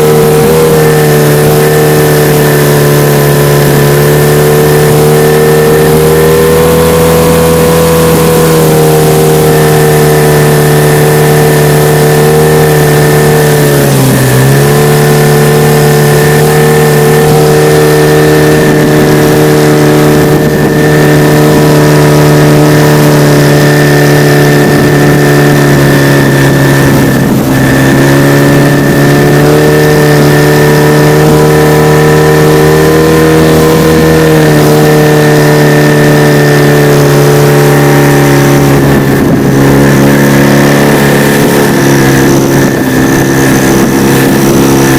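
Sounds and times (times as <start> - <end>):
outboard motor running: 0.0 - 44.9.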